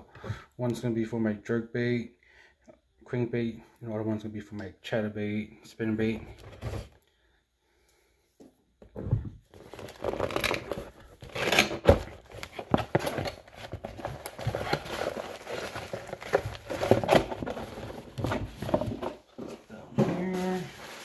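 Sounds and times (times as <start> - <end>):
packaging rustling and crinkling: 9.4 - 21.0.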